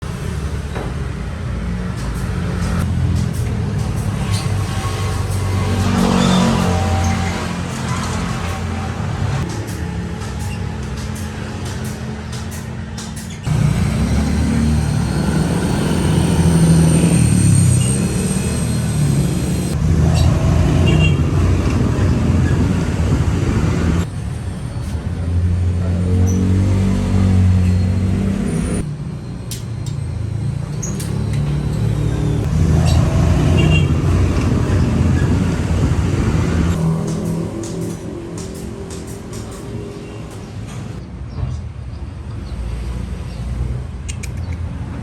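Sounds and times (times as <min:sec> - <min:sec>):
car road noise rumble: 0:12.8 - 0:28.9, 0:30.3 - 0:41.0.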